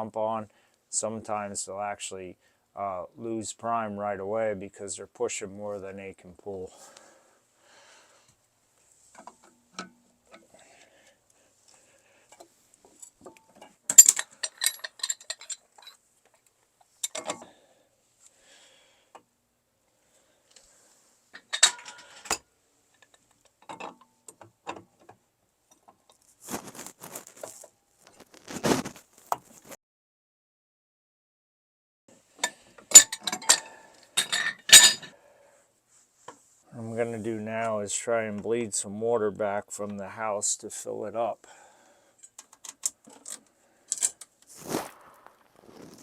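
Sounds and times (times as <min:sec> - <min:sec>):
metal tools clinking: 0:13.0 - 0:16.0, 0:21.4 - 0:22.4, 0:32.9 - 0:35.1.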